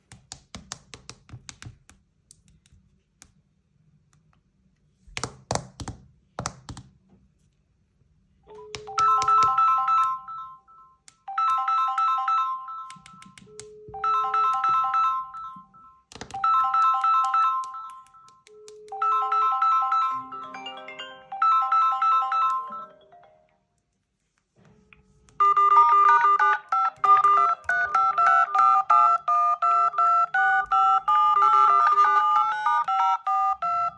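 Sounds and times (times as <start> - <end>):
phone ringtone chime melody: 8.5 - 13.0, 13.9 - 18.3, 18.9 - 23.6, 25.4 - 33.9
fast phone ringtone tune: 8.8 - 13.0, 13.9 - 18.3, 18.9 - 23.4, 25.4 - 33.9.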